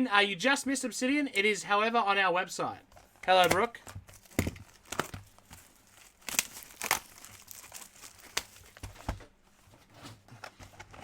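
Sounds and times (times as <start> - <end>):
wrappers crinkling and tearing: 3.5 - 9.1.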